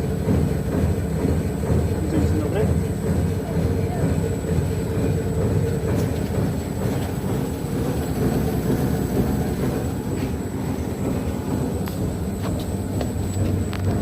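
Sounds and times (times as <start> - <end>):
high mechanical whine: 0.0 - 14.0
veneer splicer running: 0.0 - 14.0.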